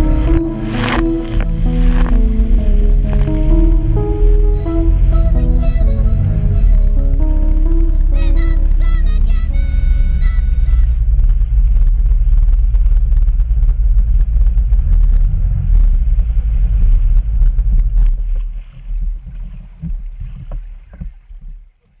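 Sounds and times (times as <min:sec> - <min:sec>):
wind and water rushing: 0:00.0 - 0:11.6.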